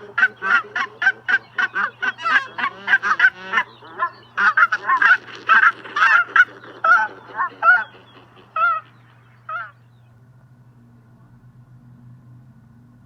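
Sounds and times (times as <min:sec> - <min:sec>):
geese honking: 0:00.0 - 0:10.0.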